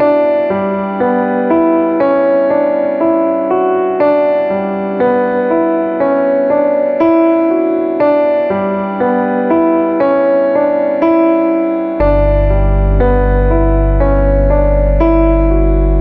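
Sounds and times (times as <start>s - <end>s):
electric piano playing: 0.0s - 16.0s.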